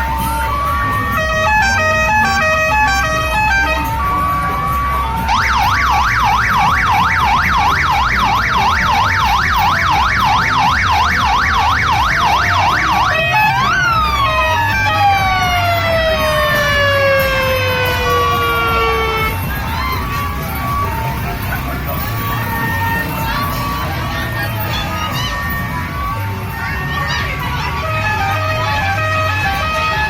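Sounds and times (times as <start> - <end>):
electronic siren yelping and wailing: 0.0 - 30.0.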